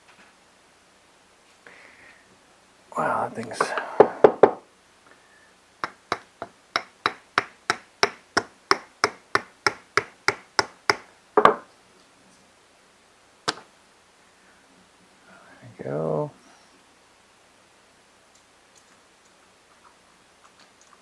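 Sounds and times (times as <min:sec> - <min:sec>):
hand tool tapping: 0:03.6 - 0:04.6, 0:05.8 - 0:11.6
loud knock: 0:04.0 - 0:04.6.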